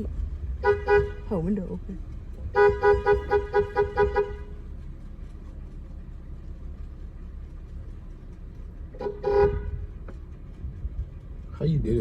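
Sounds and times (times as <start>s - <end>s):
car low rumble: 0.0s - 12.0s
car horn short beeps: 0.6s - 1.3s, 2.4s - 4.6s, 9.0s - 9.9s.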